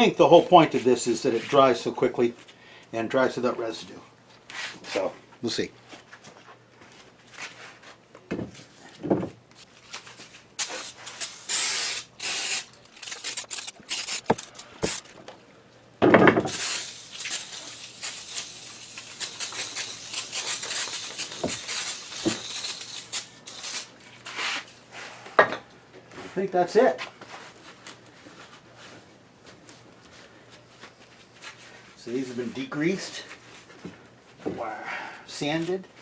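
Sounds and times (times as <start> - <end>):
aerosol spray hissing: 10.6 - 15.0, 16.5 - 23.9.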